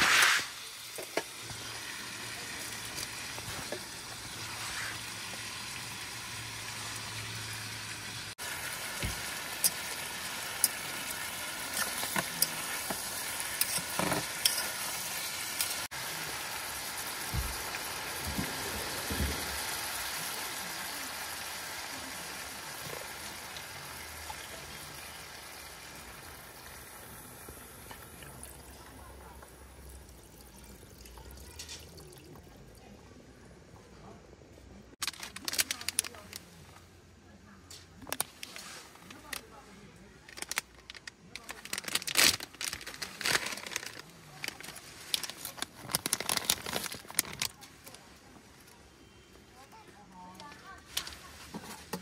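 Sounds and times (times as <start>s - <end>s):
steady sizzle: 0.0s - 32.1s.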